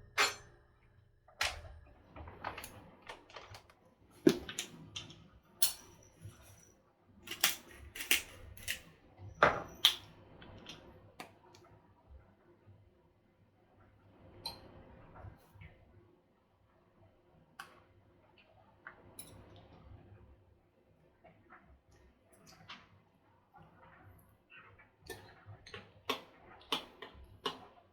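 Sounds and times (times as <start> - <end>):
kitchen clicks and knocks: 0.0 - 0.6, 1.3 - 6.7, 7.3 - 10.1.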